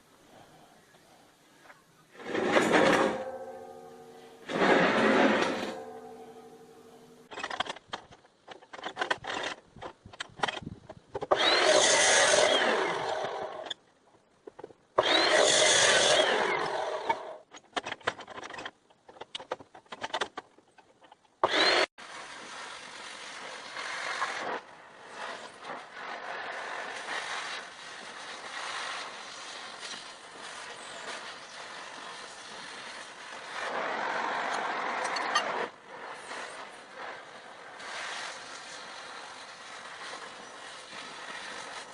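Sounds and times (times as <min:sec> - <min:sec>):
power tool on steel: 0:02.1 - 0:07.3, 0:11.3 - 0:13.7, 0:15.0 - 0:17.4, 0:21.4 - 0:21.9, 0:26.3 - 0:41.9.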